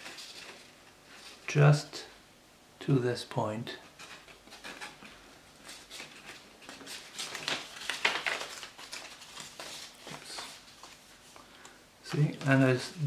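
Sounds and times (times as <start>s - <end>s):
paper rustling and crinkling: 0.0s - 1.5s, 3.9s - 13.0s.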